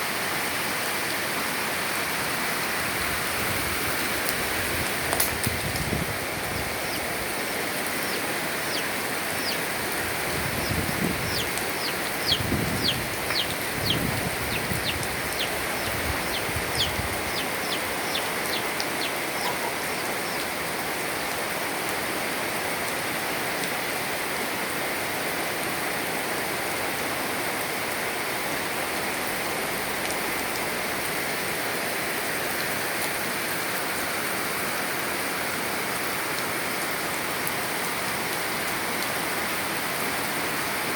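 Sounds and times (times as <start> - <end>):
heavy rain falling: 0.0 - 40.9
bird chirping: 6.6 - 9.7, 10.6 - 20.5.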